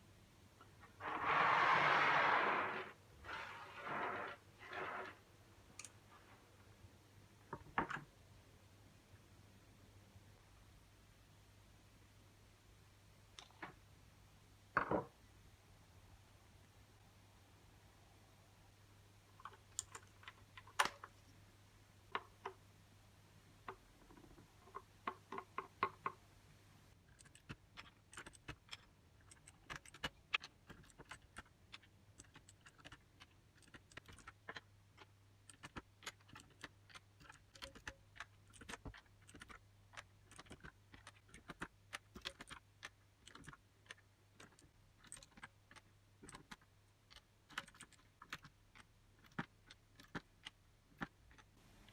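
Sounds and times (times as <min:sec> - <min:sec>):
typing on mechanical keyboard: 0:27.1 - 0:51.5.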